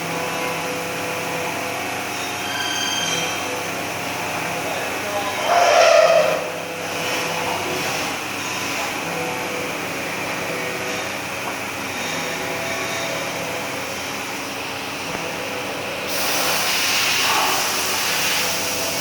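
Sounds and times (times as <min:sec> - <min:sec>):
machining center running: 0:00.0 - 0:19.0
loud hiss: 0:16.1 - 0:19.0.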